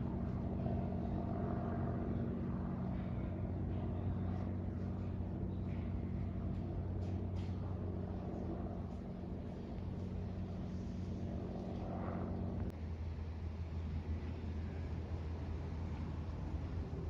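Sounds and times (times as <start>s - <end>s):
aircraft engines rumbling overhead: 0.0s - 17.0s.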